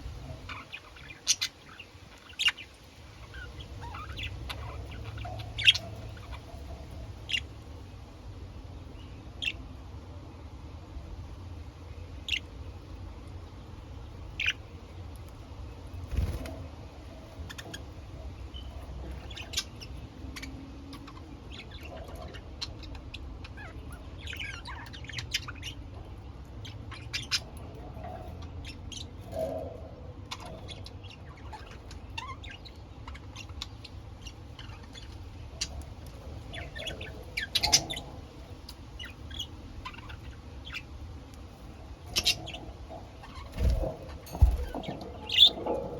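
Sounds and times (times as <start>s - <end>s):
budgerigars chirping: 0.0s - 7.7s, 9.4s - 9.6s, 14.3s - 15.0s, 17.2s - 41.0s, 41.7s - 45.9s
steady low hum: 0.0s - 45.9s.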